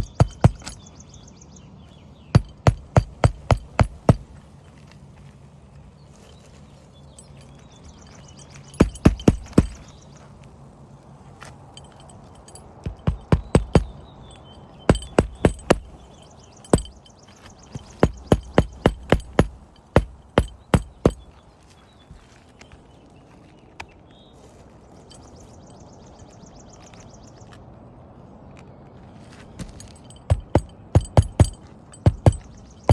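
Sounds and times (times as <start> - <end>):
hammer driving nails into shingles: 0.0 - 0.8, 2.4 - 4.4, 8.7 - 9.9, 12.8 - 14.0, 14.9 - 17.1, 17.7 - 21.3, 29.6 - 32.9.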